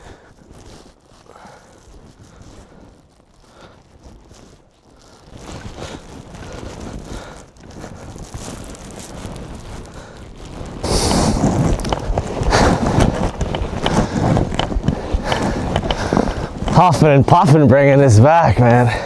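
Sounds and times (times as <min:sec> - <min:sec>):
footsteps crunching through snow: 0:00.2 - 0:19.0
pine branches rustling: 0:00.3 - 0:17.2
wind buffeting the microphone: 0:05.5 - 0:17.5
person breathing hard: 0:10.0 - 0:16.8.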